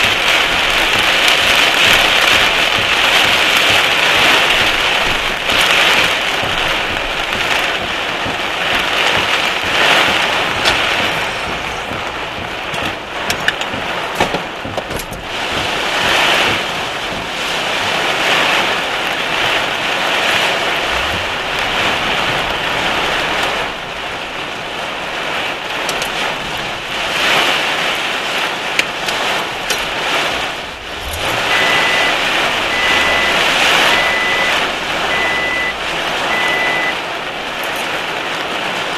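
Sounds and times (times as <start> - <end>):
heavy rain: 0.0 - 38.9
rushing floodwater: 0.0 - 38.9
vehicle reversing alarm beeping: 1.0 - 13.0, 31.0 - 37.1.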